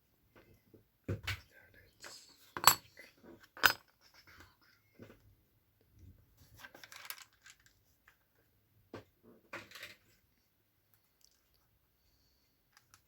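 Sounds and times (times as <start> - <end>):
metal parts clinking: 2.6 - 2.8, 3.6 - 3.8.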